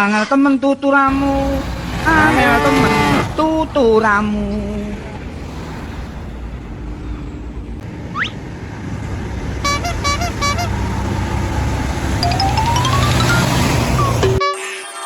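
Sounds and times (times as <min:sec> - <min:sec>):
low engine rumble: 0:01.1 - 0:14.4
vehicle horn toots: 0:09.6 - 0:10.8.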